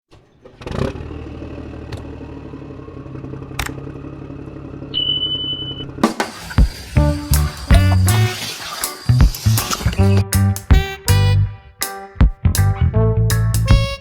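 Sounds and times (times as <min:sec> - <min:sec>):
engine running: 0:00.5 - 0:10.6
high beep: 0:05.0 - 0:05.9.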